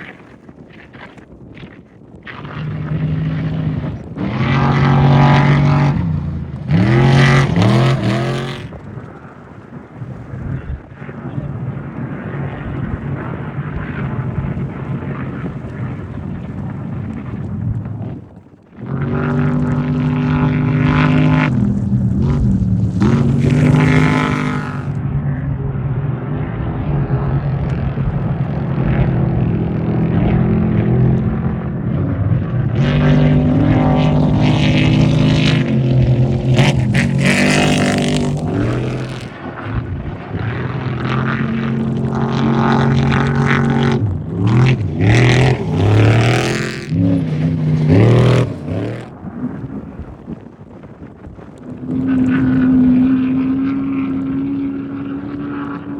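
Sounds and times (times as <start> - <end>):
race trucks revving past: 2.5 - 8.9, 18.8 - 49.6, 51.8 - 55.9.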